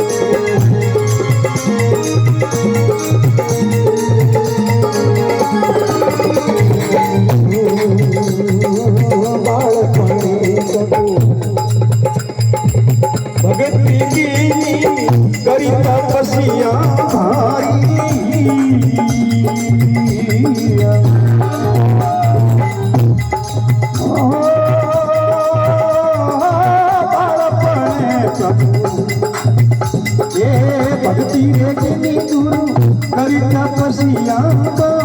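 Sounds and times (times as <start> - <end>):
wavering melodic line: 0.0 - 10.1
shaken and struck percussion: 0.0 - 35.0.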